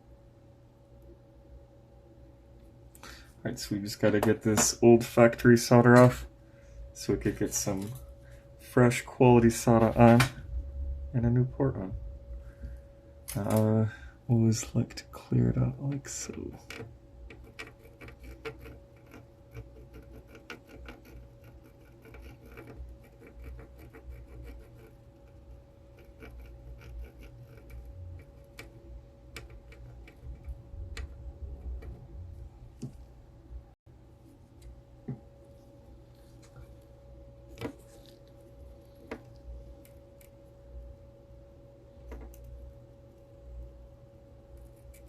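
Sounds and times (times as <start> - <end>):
thin constant tone: 0.0 - 33.4
steady low hum: 0.0 - 45.0.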